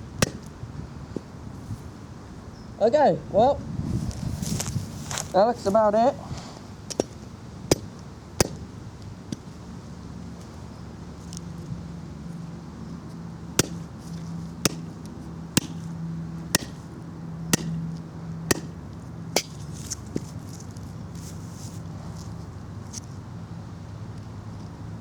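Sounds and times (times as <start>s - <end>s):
hammer striking battery: 0.2s - 0.5s, 6.9s - 8.7s, 13.6s - 13.9s, 14.6s - 14.9s, 15.6s - 15.9s, 16.6s - 16.8s, 17.5s - 17.8s, 18.5s - 18.8s.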